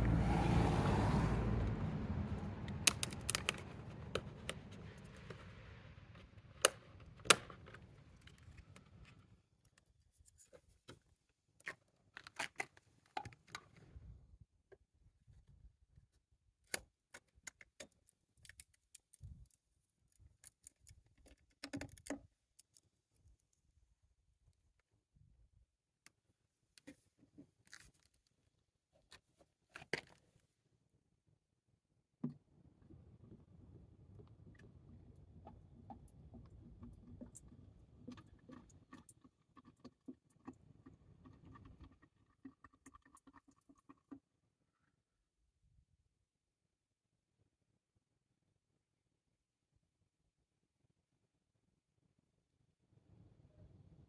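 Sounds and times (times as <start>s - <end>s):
faint small clicks and taps: 16.7s - 23.6s.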